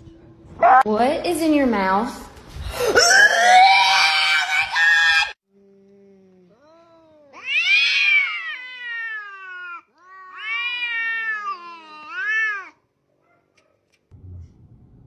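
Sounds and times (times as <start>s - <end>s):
cat meowing loudly: 7.0s - 12.8s.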